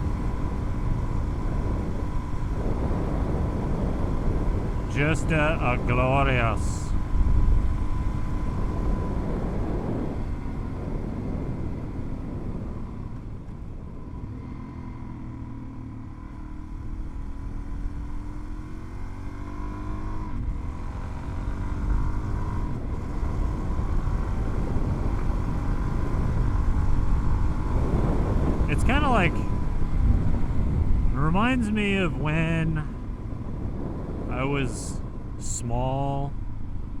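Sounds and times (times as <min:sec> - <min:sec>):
motorcycle engine revving on the move: 0:00.0 - 0:37.0
road and wind rumble: 0:00.0 - 0:37.0.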